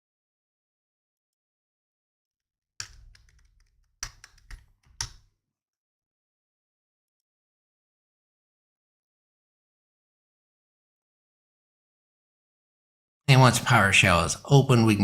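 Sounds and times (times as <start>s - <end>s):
computer keyboard keys clicking: 2.8s - 5.2s.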